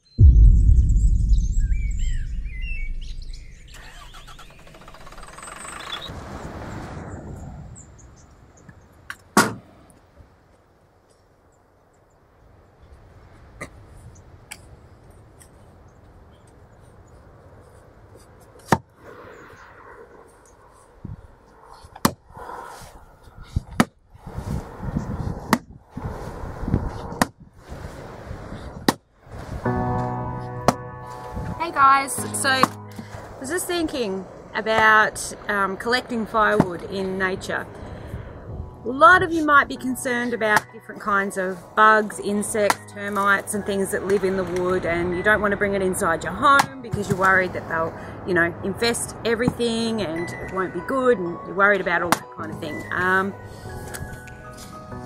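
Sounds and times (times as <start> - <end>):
loud low rumble: 0.0 - 6.0
steady rushing noise: 0.0 - 6.5
small birds chirping: 1.4 - 6.1
rustling and shifting: 2.2 - 6.0.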